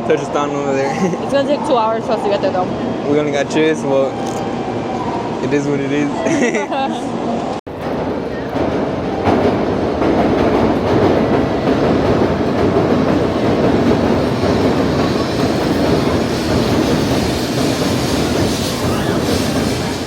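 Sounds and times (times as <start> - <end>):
bullet train rushing: 7.0 - 20.0.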